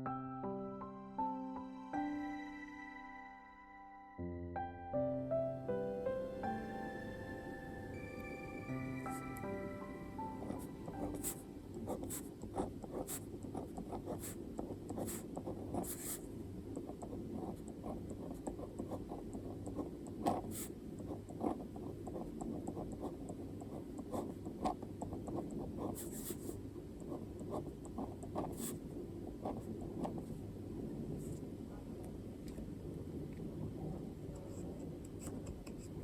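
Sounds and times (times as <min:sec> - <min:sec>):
pen scratching on paper: 0:10.4 - 0:30.4, 0:34.4 - 0:36.0.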